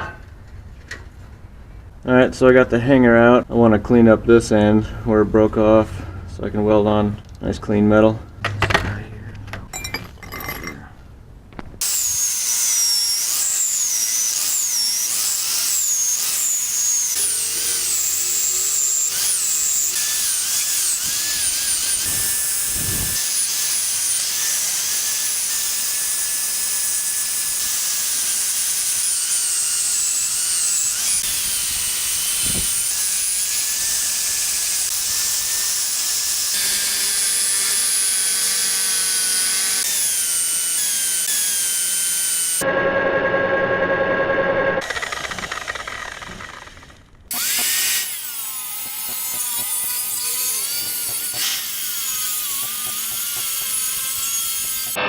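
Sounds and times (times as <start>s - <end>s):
power grinder grinding steel: 11.8s - 42.8s, 44.8s - 55.0s.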